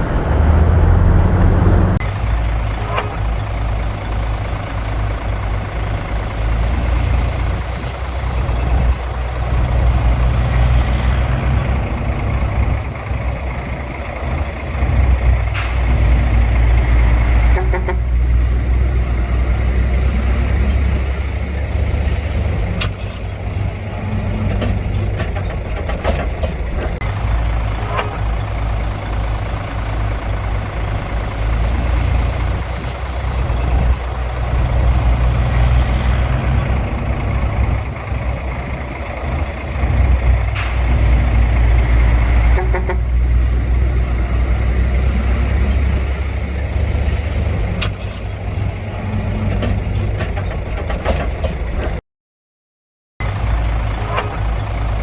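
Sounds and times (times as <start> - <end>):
diesel engine rumble: 0.0 - 52.0, 53.2 - 55.0
sharp metal clanks: 22.7 - 23.4, 47.8 - 48.4.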